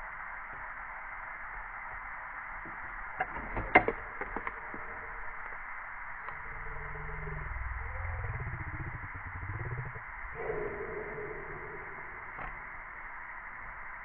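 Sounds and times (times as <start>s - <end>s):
low hum: 0.0s - 14.0s
steady hiss: 0.0s - 14.0s.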